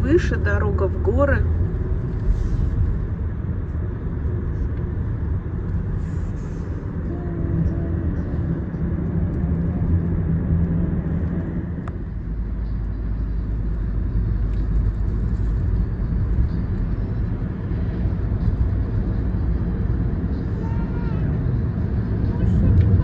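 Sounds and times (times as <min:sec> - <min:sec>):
car engine and road noise: 0:00.0 - 0:23.0.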